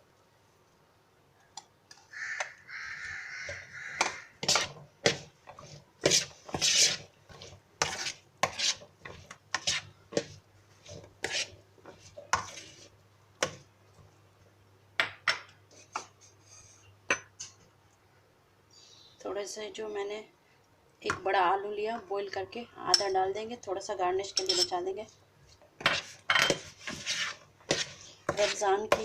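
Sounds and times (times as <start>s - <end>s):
rasping spoon scrape: 4.4s - 4.8s, 5.5s - 9.9s, 10.9s - 12.9s, 25.9s - 28.6s.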